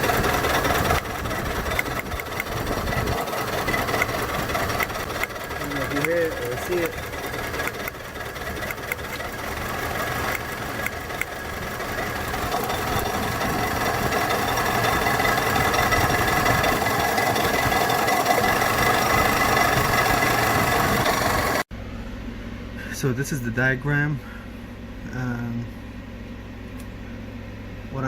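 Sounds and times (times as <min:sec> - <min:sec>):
car engine idling with misfire: 0:00.0 - 0:21.7.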